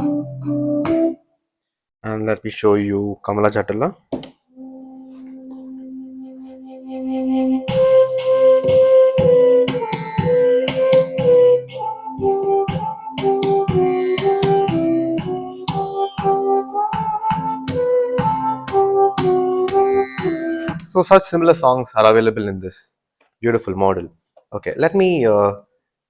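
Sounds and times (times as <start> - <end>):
keyboard lead melody: 0.0 - 1.2, 4.5 - 21.6.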